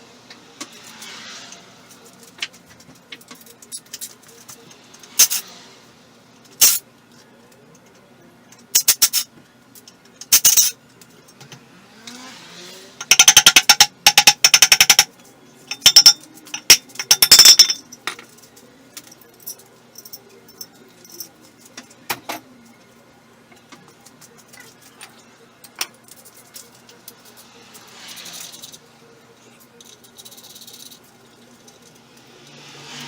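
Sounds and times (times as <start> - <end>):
metal tools clinking: 3.2 - 5.5, 15.7 - 22.4.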